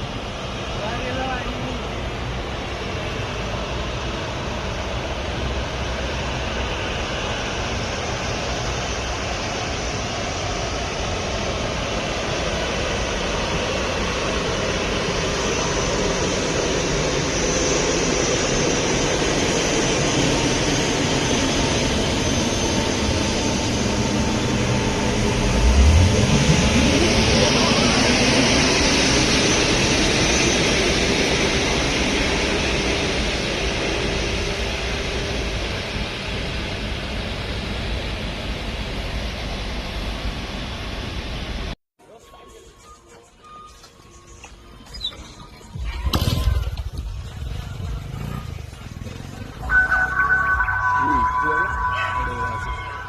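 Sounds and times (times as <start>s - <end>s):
jet engine roar: 0.0s - 41.8s, 48.0s - 53.0s
high whine: 4.6s - 40.1s, 49.4s - 53.0s
low rumble sweeping upward: 22.2s - 29.8s, 49.4s - 53.0s.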